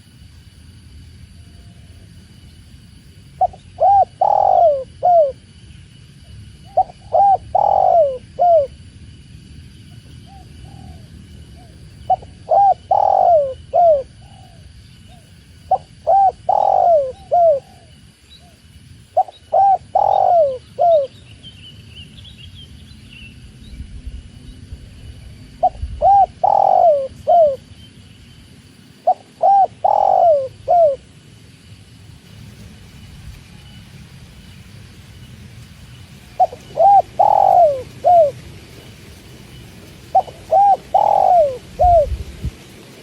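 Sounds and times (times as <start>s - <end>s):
dove cooing: 3.4s - 5.4s, 6.7s - 8.7s, 10.3s - 18.6s, 19.2s - 21.2s, 25.6s - 27.7s, 29.0s - 31.1s, 36.3s - 38.4s, 40.0s - 42.2s.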